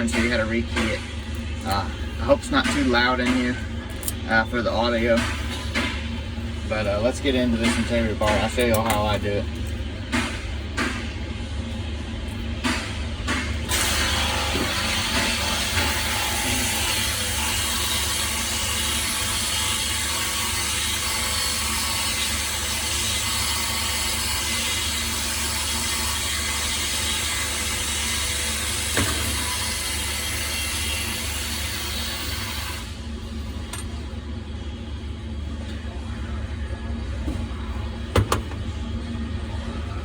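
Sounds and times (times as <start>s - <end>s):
low hum: 32.9s - 40.0s.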